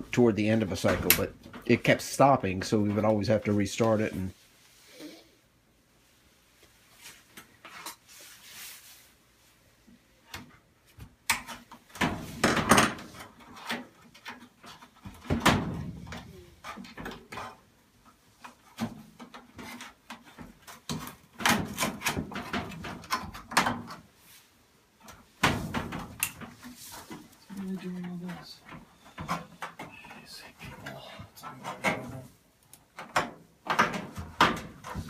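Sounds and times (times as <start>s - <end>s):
metal knocks and clanks: 12.0s - 17.6s.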